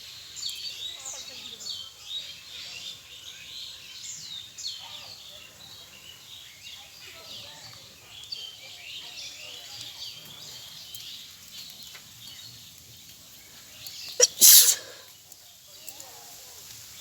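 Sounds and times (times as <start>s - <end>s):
birds chirping faintly: 0.0s - 17.0s
woman sneezing: 14.2s - 15.0s.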